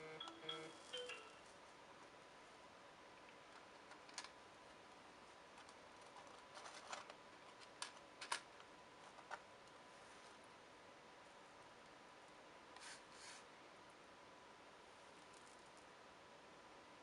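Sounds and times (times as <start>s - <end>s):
faint steady tone: 0.0s - 1.7s.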